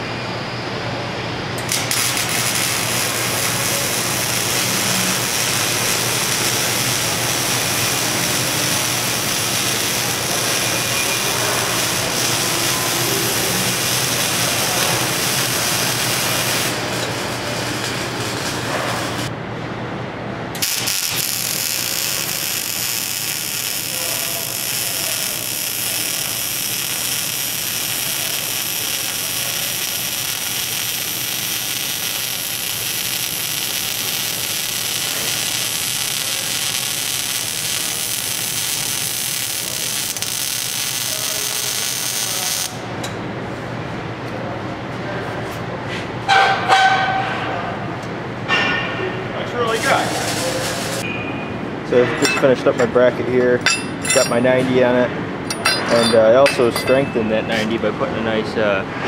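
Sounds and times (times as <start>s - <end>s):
welding arc crackling hiss: 1.6s - 19.3s, 20.6s - 42.8s, 49.6s - 51.0s.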